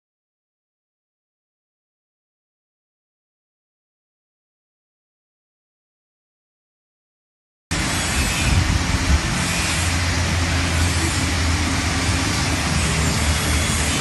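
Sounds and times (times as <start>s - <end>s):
constant rushing noise: 7.7s - 14.0s
vehicle engine hum: 7.7s - 14.0s.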